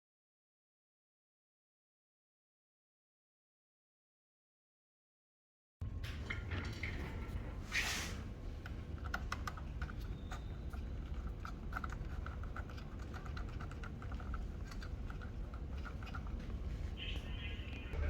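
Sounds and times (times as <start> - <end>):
low steady hum: 5.8 - 18.0.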